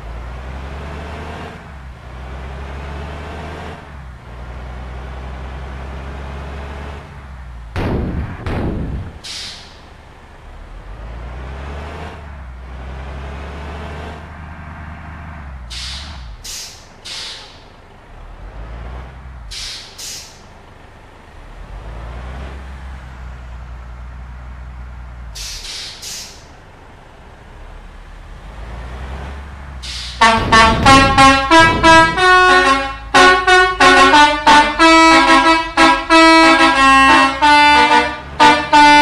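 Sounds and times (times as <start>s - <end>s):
bus engines rumbling: 0.0s - 39.0s
air brake hisses: 9.2s - 9.9s, 15.7s - 17.8s, 19.5s - 20.5s, 25.4s - 26.5s, 29.8s - 30.2s.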